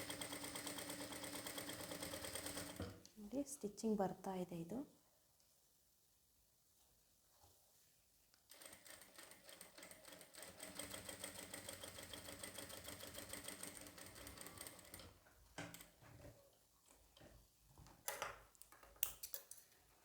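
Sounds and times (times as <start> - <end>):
sewing machine stitching: 0.0 - 2.9, 8.5 - 16.0.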